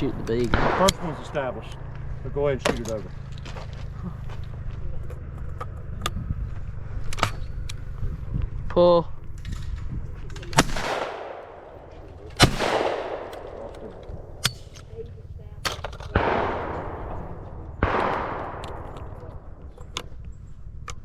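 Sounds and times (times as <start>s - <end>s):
shotgun shots: 0.0s - 2.0s, 10.4s - 15.0s, 15.6s - 19.6s
rolling echo of gunshots: 0.0s - 2.5s, 10.5s - 14.8s, 15.7s - 19.8s.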